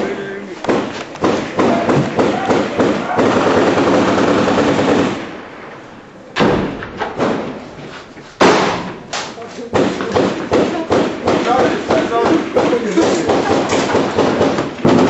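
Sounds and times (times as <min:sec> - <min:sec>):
rapid automatic gunfire: 0:00.7 - 0:05.5, 0:09.7 - 0:15.0
single loud gunshot: 0:06.4 - 0:07.6, 0:08.4 - 0:10.0.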